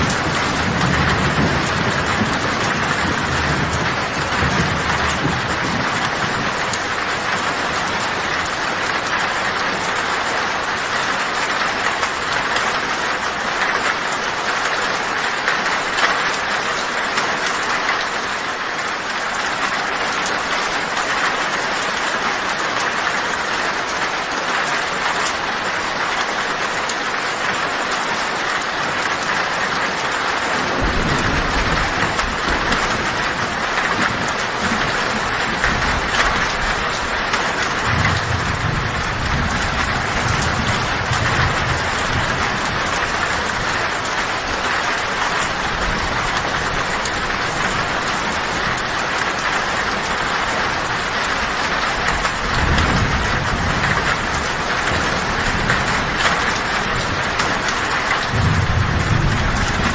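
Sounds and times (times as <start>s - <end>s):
thunder rumble: 0.0s - 10.8s, 30.6s - 49.0s, 50.8s - 59.9s
heavy rain on a tin roof: 0.0s - 59.9s.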